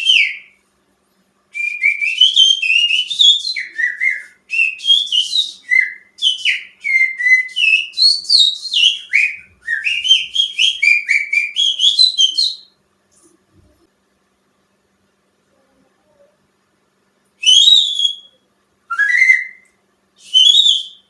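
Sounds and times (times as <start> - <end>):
finger whistling birdsong: 0.0 - 0.6, 1.6 - 12.8, 17.4 - 21.0.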